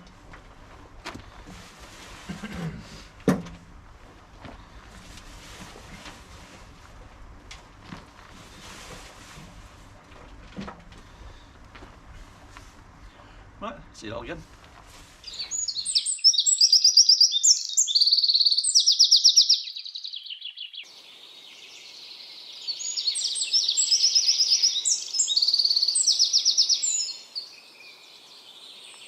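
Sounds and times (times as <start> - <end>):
songbird trilling and chirping: 15.2 - 29.0.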